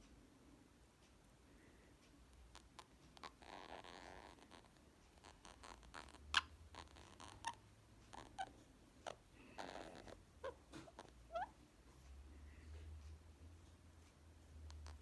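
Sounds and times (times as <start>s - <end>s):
parrot purr-like rasp: 2.4s - 11.6s.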